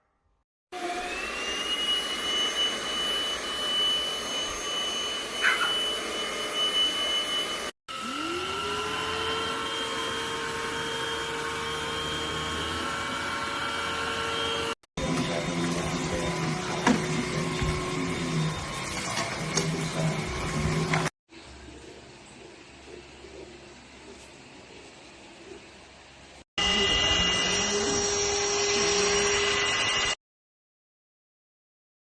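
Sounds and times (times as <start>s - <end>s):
handheld vacuum motor whining: 0.8s - 21.1s, 26.6s - 30.2s.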